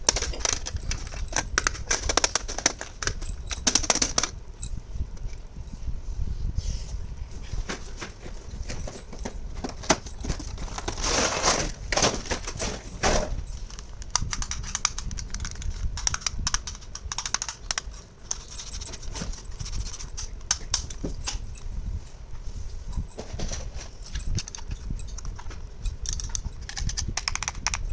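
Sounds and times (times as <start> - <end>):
packaging rustling: 0.0 - 4.3, 8.0 - 21.0
plastic toy pieces clicking: 0.0 - 4.4, 13.7 - 21.4, 24.1 - 27.9.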